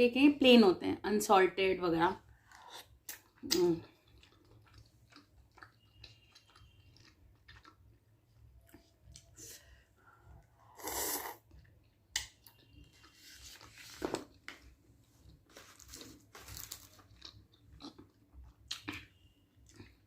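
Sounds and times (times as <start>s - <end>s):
person chewing: 2.4s - 9.4s, 14.3s - 20.0s.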